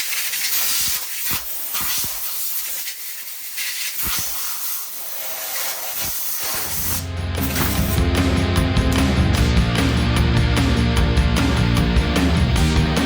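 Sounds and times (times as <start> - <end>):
compressed air blow gun hissing: 0.0 - 8.1.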